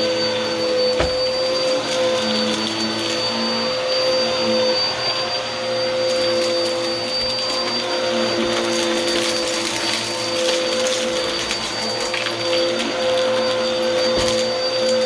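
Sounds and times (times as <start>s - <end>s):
vacuum cleaner running: 0.0s - 15.0s.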